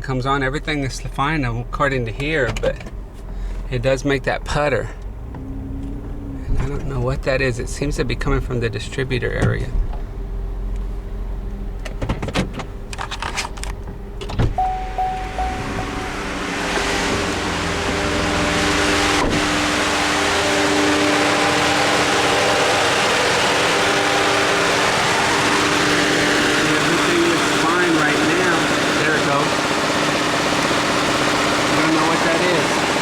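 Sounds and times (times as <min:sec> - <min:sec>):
man talking: 0:00.0 - 0:02.9, 0:03.7 - 0:05.0, 0:06.4 - 0:09.8, 0:26.6 - 0:29.5, 0:31.7 - 0:32.9
car engine running: 0:00.0 - 0:33.0
engine whine: 0:04.7 - 0:33.0.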